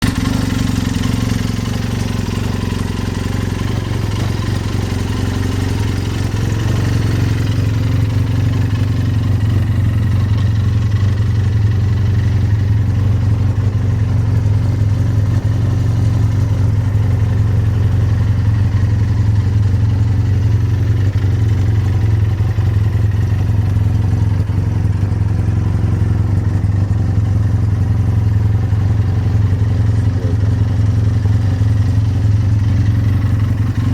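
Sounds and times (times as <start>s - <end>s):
snowmobile engine idling: 0.0s - 33.9s.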